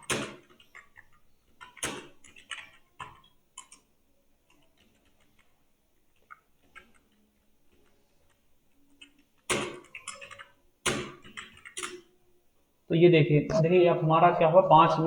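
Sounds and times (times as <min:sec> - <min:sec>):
loud keyboard clattering: 0:00.0 - 0:03.8, 0:09.0 - 0:12.0
computer keyboard typing: 0:00.0 - 0:12.1.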